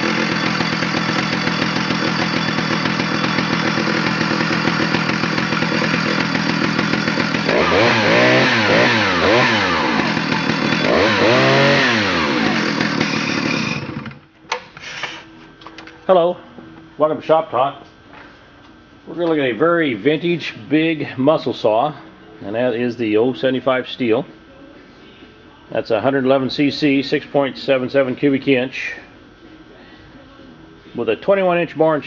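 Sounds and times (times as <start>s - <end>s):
chainsaw engine revving: 0.0s - 14.2s.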